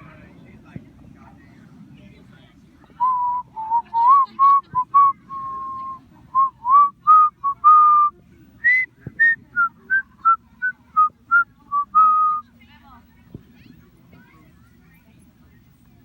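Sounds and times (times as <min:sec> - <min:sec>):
person whistling a tune: 0:03.0 - 0:12.4.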